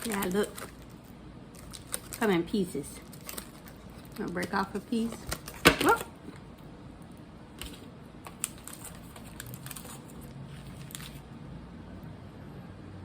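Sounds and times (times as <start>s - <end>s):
chocolate being chewed: 8.3s - 11.2s.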